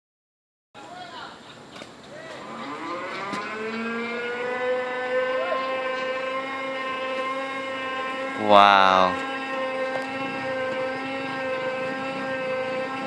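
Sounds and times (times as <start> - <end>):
steady mechanical whine: 2.7 - 13.0.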